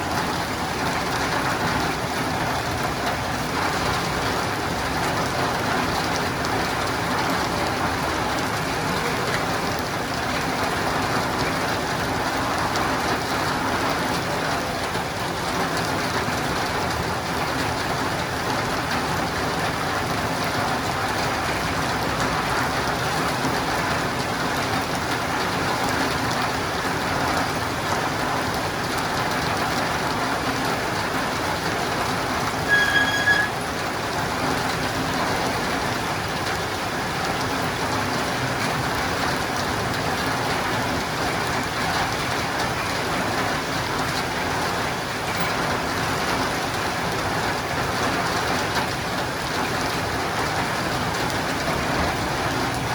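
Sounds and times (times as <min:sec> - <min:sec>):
rain on a roof: 0:00.0 - 0:52.9
high-pitched tone: 0:32.7 - 0:33.6.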